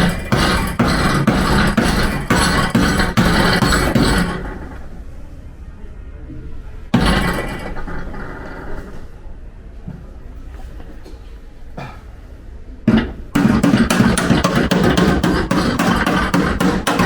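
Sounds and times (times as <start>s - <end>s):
hammer striking steel panel: 0.0s - 4.8s, 7.0s - 8.3s, 12.9s - 17.0s.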